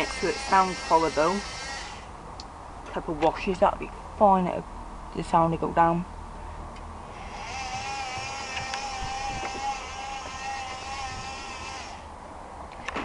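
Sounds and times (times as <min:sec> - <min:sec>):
washing machine motor whining: 0:00.0 - 0:02.1, 0:07.1 - 0:12.1.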